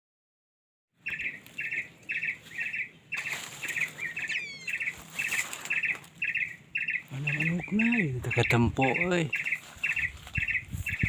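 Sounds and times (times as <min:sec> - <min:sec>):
bird buzzy pulsed call: 0:01.0 - 0:11.0
bird quick falling call: 0:01.1 - 0:07.9.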